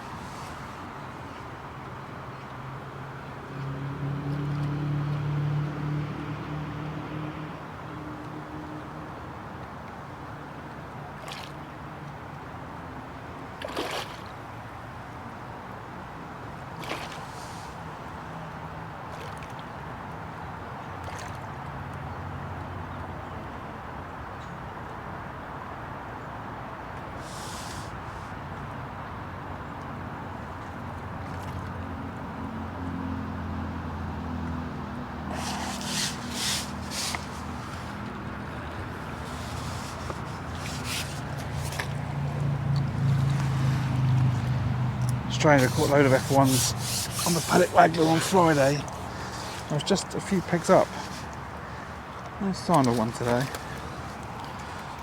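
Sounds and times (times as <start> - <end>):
low engine hum: 0.0 - 9.5, 30.2 - 55.0
steady outdoor noise: 0.0 - 55.0
brief splashing: 35.2 - 52.0
short rustles: 35.3 - 44.4, 45.0 - 51.9.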